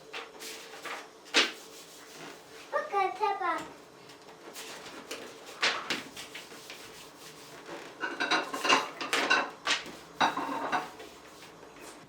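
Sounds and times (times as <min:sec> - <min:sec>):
dishes and cutlery clinking: 0:08.0 - 0:11.0.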